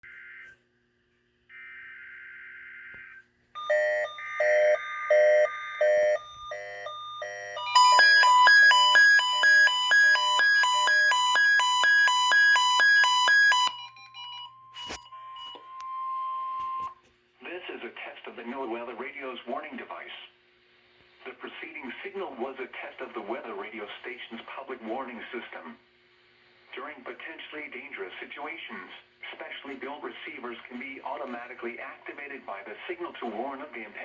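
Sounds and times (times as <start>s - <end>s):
weather radio alert beeps: 3.7s - 13.8s.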